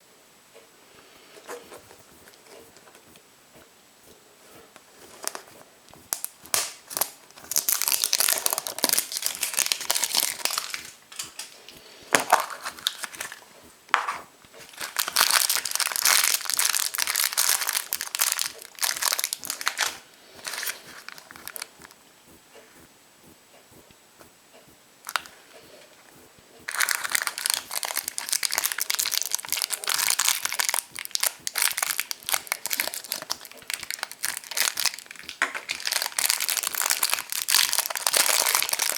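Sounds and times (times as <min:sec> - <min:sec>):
foil wrapper crinkling: 0:05.1 - 0:13.4, 0:14.6 - 0:22.0, 0:25.1 - 0:25.4, 0:26.7 - 0:38.9.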